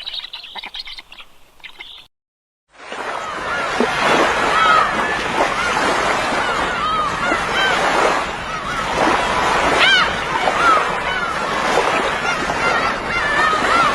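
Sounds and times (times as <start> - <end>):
flock of birds chattering: 0.0 - 2.1
harsh bird call: 0.0 - 2.1.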